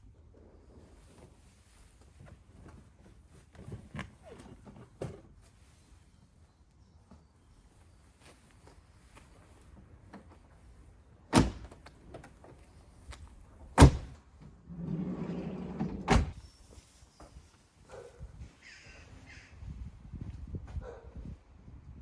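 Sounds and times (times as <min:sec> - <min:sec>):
heavy van door thunks: 0:11.3 - 0:11.8, 0:13.8 - 0:14.2, 0:15.7 - 0:16.4
sliding door rolling on track: 0:14.6 - 0:16.4.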